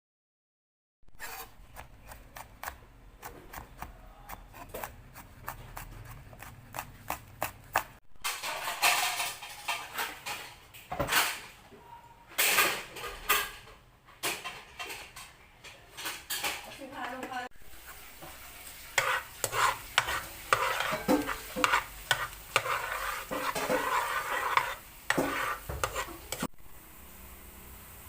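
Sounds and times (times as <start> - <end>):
dishes and utensils clattering: 8.2 - 11.7, 12.3 - 17.5, 19.0 - 26.5.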